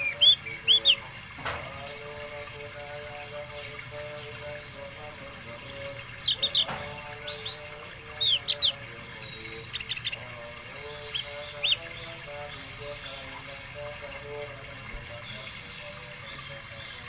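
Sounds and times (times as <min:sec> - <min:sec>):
caged songbird chirping: 0:00.0 - 0:17.0.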